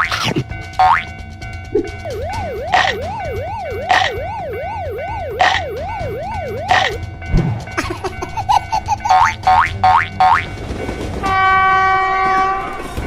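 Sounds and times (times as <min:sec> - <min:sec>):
springy boing sound effect: 0:00.0 - 0:01.1, 0:02.1 - 0:04.4, 0:05.3 - 0:05.8, 0:06.6 - 0:07.0
cartoon siren wailing: 0:02.0 - 0:07.0
low thump: 0:07.3 - 0:07.8.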